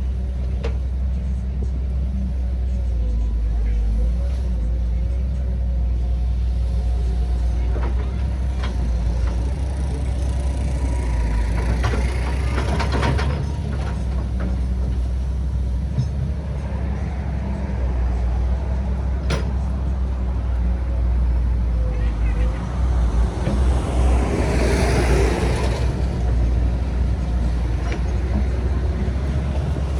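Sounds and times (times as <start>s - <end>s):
diesel machinery rumbling: 0.0s - 29.9s.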